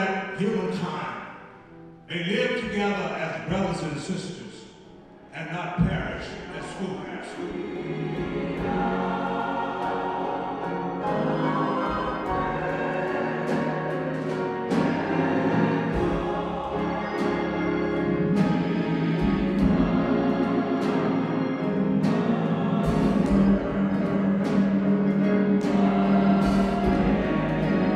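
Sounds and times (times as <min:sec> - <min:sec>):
church choir singing: 0:00.0 - 0:27.9
organ: 0:00.0 - 0:27.9
percussion strikes: 0:07.4 - 0:27.9.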